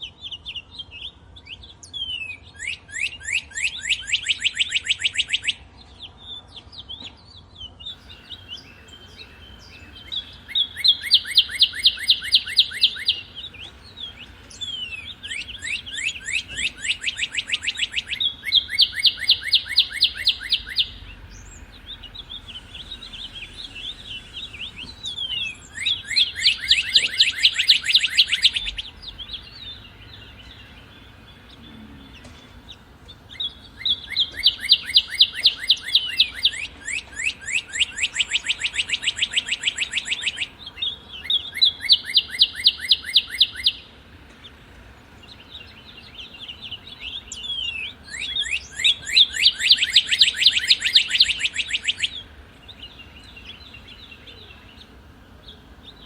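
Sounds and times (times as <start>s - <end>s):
other birds chirping: 0.1s - 56.0s
cardinal singing whistled notes: 1.4s - 5.7s, 7.9s - 43.9s, 45.3s - 56.0s.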